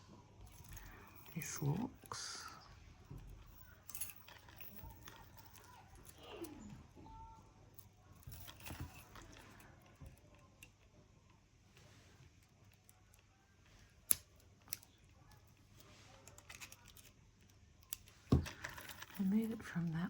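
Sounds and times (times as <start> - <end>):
beaded necklace rattling: 0.4 - 7.0, 7.7 - 10.0, 18.0 - 20.0
metal chain clinking: 0.4 - 10.0, 18.3 - 20.0.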